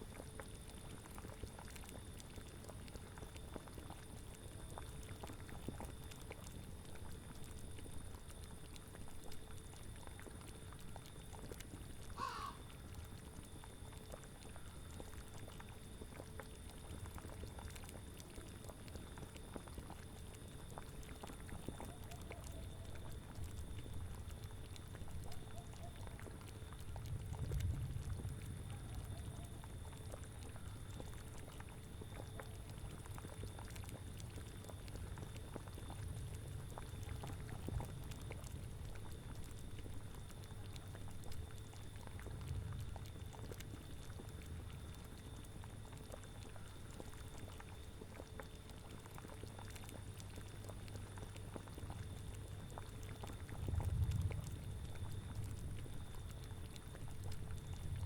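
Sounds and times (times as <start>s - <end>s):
cauldron bubbling: 0.1s - 58.0s
short animal call: 12.2s - 12.6s.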